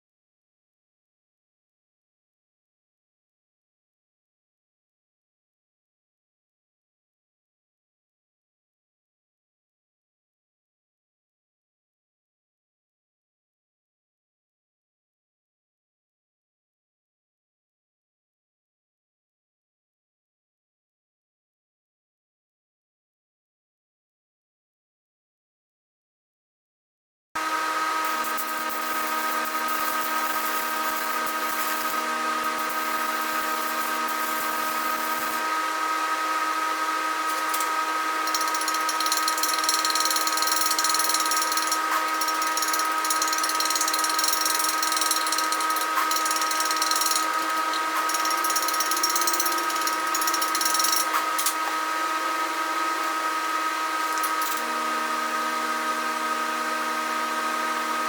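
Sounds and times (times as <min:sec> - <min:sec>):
electric grinder motor whine: 0:27.4 - 0:58.0
grinder hissing on metal: 0:27.8 - 0:56.5.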